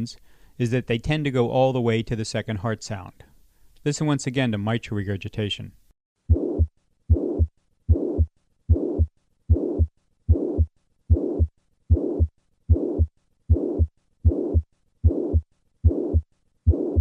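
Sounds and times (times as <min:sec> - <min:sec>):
heartbeat with murmur: 0:06.3 - 0:17.0.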